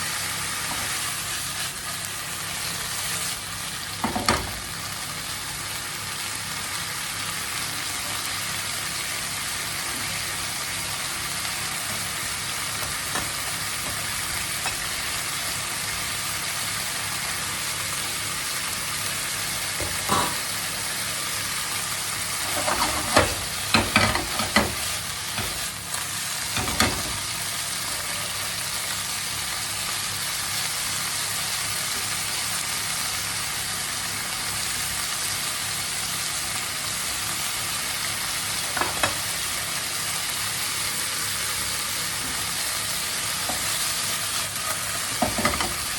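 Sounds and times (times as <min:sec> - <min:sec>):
livers sizzling in oil: 0:00.0 - 0:45.9
utensil clattering against pan: 0:22.5 - 0:24.8.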